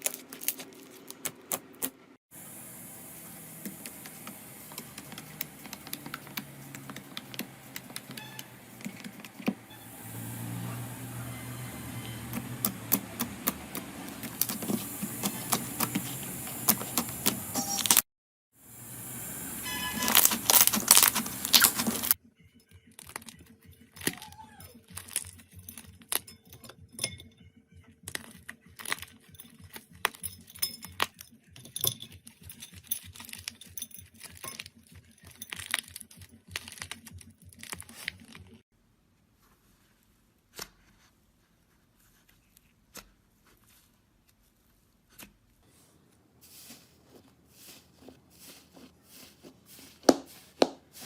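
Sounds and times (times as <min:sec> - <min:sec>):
slime crunchy crackling: 0:19.7 - 0:22.2.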